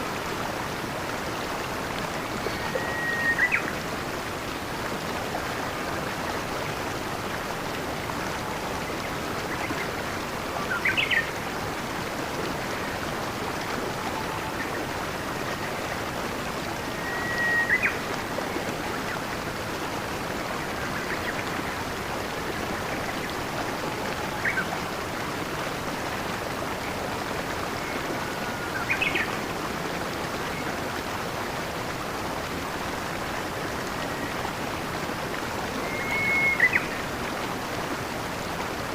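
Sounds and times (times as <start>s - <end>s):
stream rushing: 0.0s - 38.9s.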